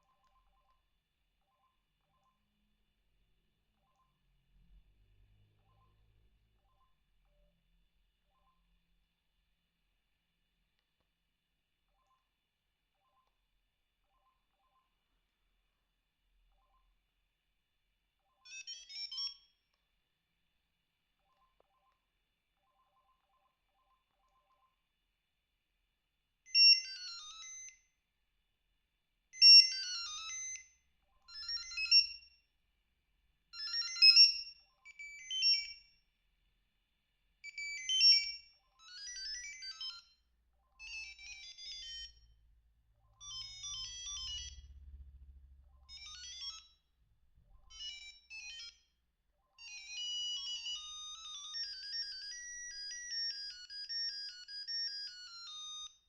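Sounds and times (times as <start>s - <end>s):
mobile phone ringtone beep tunes: 18.2s - 19.6s, 26.5s - 27.9s, 29.4s - 32.5s, 33.6s - 36.0s, 37.4s - 46.9s, 47.5s - 56.0s.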